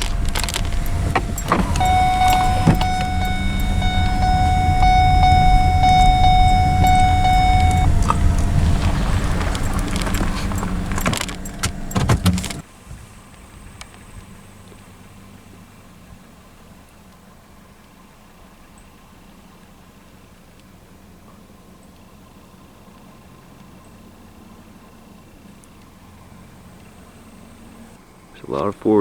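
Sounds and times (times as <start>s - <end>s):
electronic warning chime: 0.0s - 12.0s
car engine running: 0.0s - 12.6s
clicks: 0.0s - 12.6s
keys jangling: 0.0s - 12.6s.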